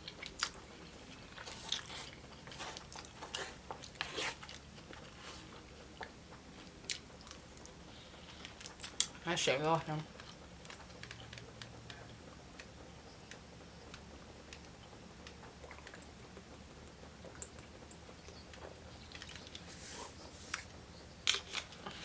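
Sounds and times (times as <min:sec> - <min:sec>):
faint chewing: 0:00.0 - 0:09.2, 0:10.0 - 0:22.0.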